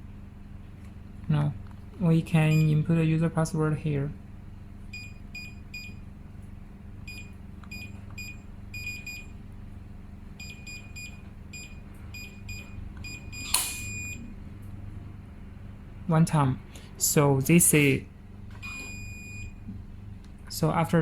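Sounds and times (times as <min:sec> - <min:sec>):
keypad beeps: 0:05.0 - 0:06.0, 0:07.1 - 0:09.3, 0:10.4 - 0:14.2, 0:18.6 - 0:19.6.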